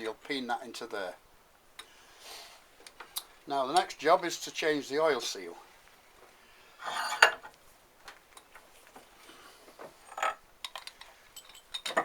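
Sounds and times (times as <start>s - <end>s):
small metal parts clinking: 10.0s - 12.0s.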